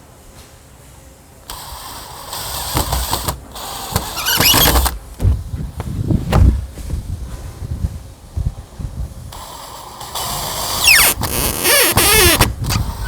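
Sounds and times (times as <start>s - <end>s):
power drill driving screw into wood: 1.5s - 5.2s, 9.4s - 13.0s
knocks: 2.7s - 7.0s.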